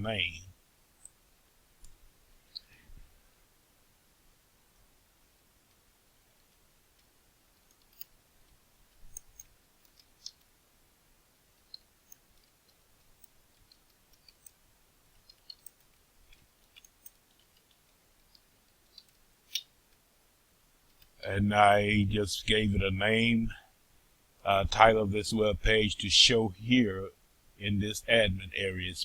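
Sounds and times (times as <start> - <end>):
faint keyboard typing: 5.6 - 10.6, 11.2 - 20.0, 20.8 - 21.2.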